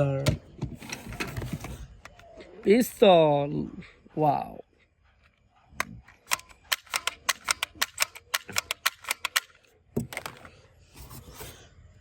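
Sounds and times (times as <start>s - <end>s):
toy pistol clicking rapidly: 6.1s - 9.7s.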